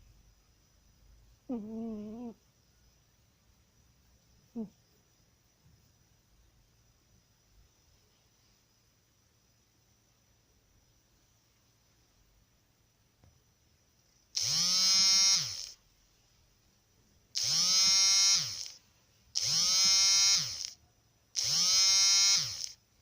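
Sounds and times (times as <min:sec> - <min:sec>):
cat snoring: 0:01.5 - 0:02.4.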